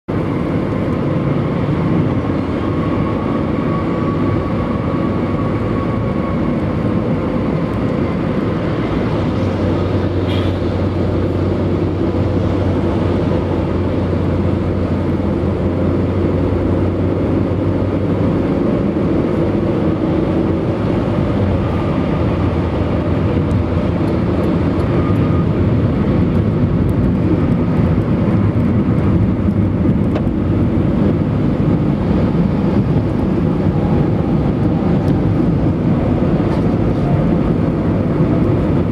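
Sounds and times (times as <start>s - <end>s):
tyre road noise drone: 0.1s - 38.9s.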